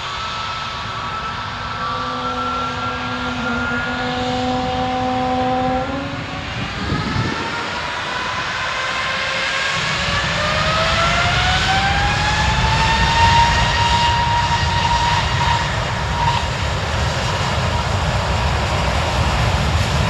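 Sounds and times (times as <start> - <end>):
jet engines roaring at takeoff: 0.0 - 20.0
whining engine tones rising: 0.0 - 20.0.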